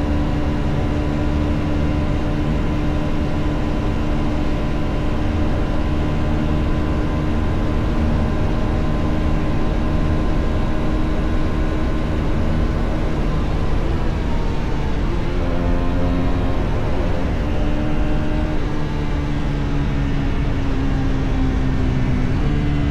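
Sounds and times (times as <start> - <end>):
motorcycle engine cruising: 0.0 - 22.9
road rumble: 0.0 - 22.9.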